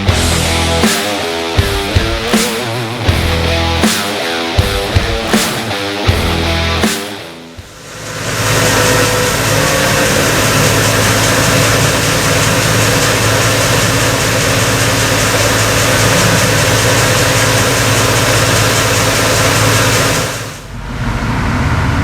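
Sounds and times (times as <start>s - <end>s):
combine harvester running: 7.7s - 22.0s.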